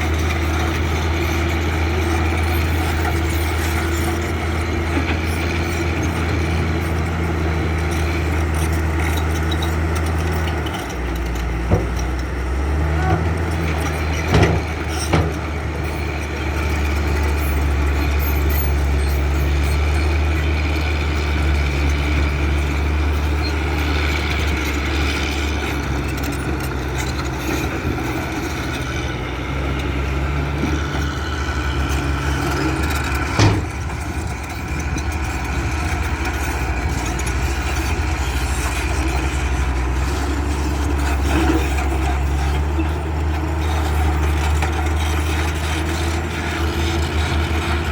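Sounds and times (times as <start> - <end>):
diesel machinery engine drone: 0.0 - 47.9.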